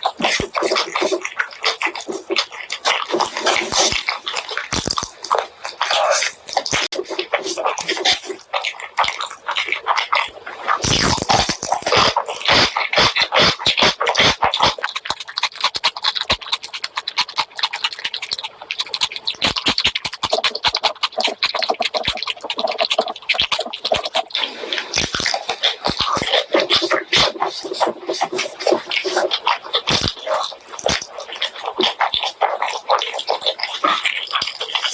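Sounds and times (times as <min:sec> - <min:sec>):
wet chewing and lip smacking: 0:00.0 - 0:34.9.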